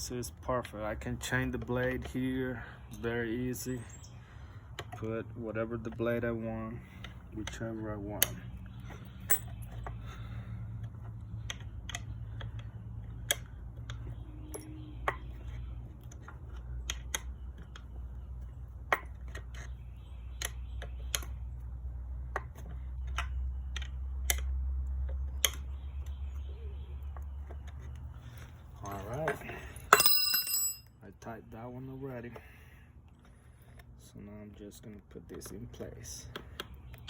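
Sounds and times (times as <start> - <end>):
metal parts clicking and tapping: 7.0 - 10.0, 10.8 - 19.8, 28.8 - 30.9.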